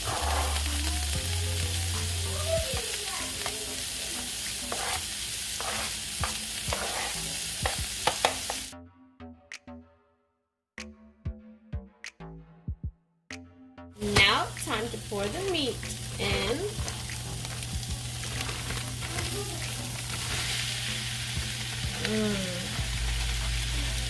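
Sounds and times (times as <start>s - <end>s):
vegetables sizzling in oil: 0.0s - 8.7s, 14.0s - 24.0s
faint background music with beat: 0.0s - 10.0s, 10.8s - 24.0s.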